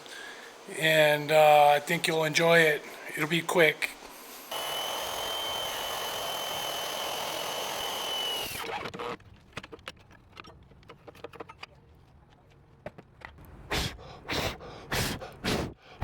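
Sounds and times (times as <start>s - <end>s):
power tool whining: 4.2s - 9.2s.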